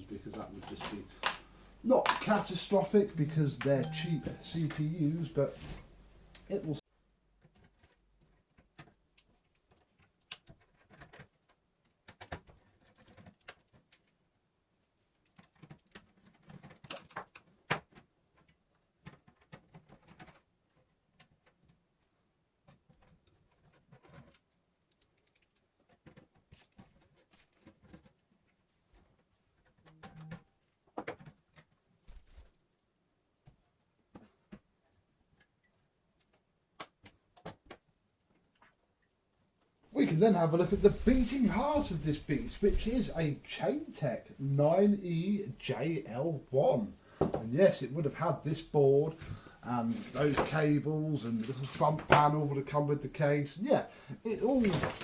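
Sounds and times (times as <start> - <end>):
hands handling computer parts: 0.3 - 5.9, 49.0 - 52.4, 54.2 - 55.0.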